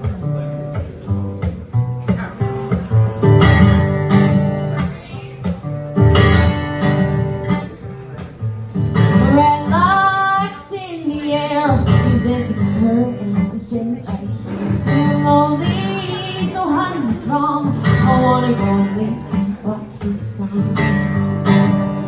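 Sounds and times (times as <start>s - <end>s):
acoustic guitar strumming: 0.0s - 22.0s
girl singing: 9.1s - 21.8s.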